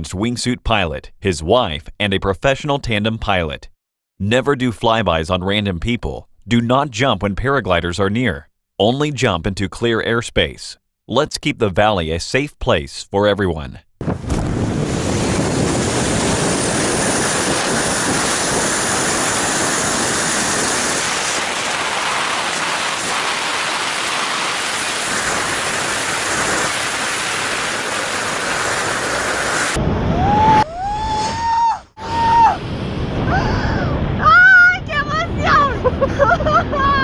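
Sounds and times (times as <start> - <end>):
wind rushing over microphone: 14.0 - 37.0
person yelling: 30.2 - 32.6, 33.3 - 37.0.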